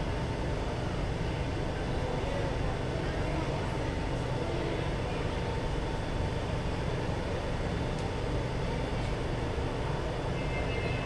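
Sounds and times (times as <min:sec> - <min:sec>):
metro train rumble and hiss: 0:00.0 - 0:11.0
faint steady tone: 0:10.2 - 0:11.0.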